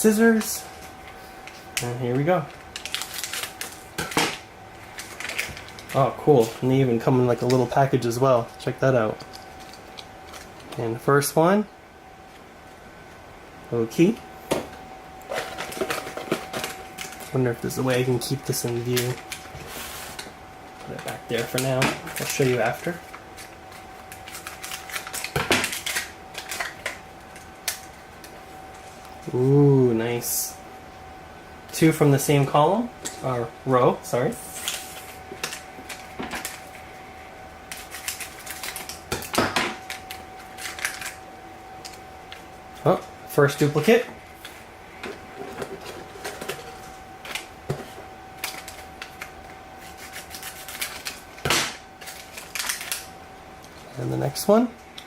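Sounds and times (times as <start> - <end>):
packaging clicks and crinkles: 1.7 - 6.6, 20.2 - 28.4, 37.7 - 41.2, 48.4 - 51.4, 52.0 - 53.8
packaging rustle: 1.7 - 6.6.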